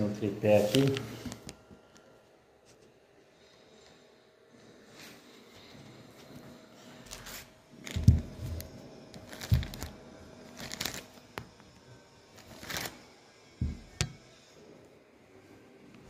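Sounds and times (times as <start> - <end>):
rustling scrapes: 6.8 - 11.2.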